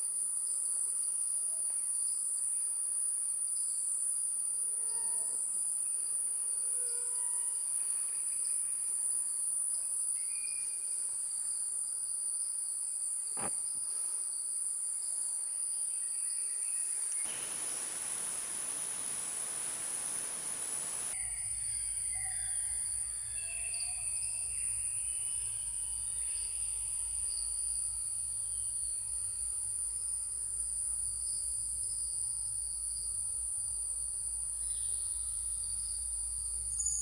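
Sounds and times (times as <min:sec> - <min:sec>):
insects chirping: 0:10.0 - 0:21.3
faint bird notes: 0:17.2 - 0:21.1.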